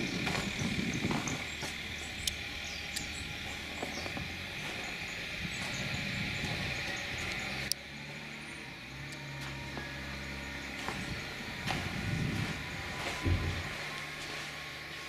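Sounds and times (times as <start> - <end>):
car engine clattering: 0.0 - 15.0.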